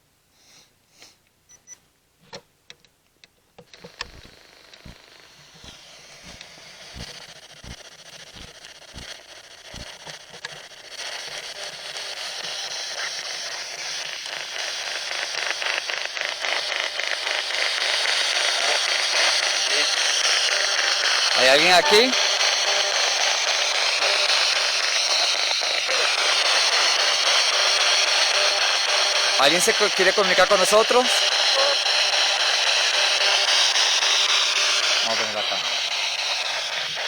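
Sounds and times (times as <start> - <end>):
device clicks: 3.7 - 9.9
radio static hiss sweeping: 3.8 - 37.0
low pulses: 4.0 - 10.0.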